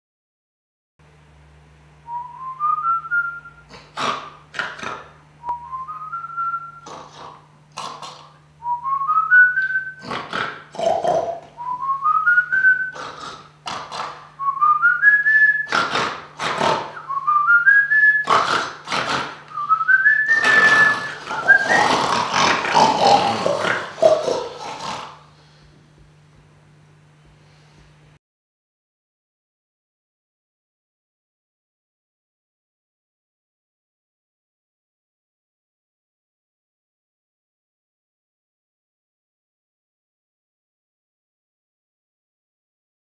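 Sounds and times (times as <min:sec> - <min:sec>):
person snoring with whistle: 0:03.4 - 0:08.4, 0:09.0 - 0:25.2.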